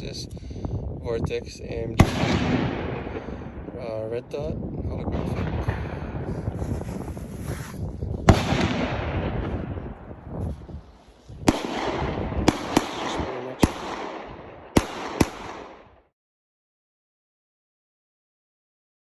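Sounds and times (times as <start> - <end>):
low wind rumble: 0.0 - 16.1
gunshots with ringing echo: 2.0 - 6.6, 8.3 - 16.1.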